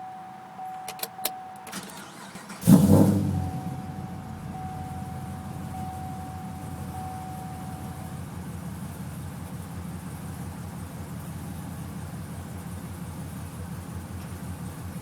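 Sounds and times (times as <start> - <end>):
car engine idling with misfire: 1.7 - 15.0
faint high tone: 3.3 - 8.3.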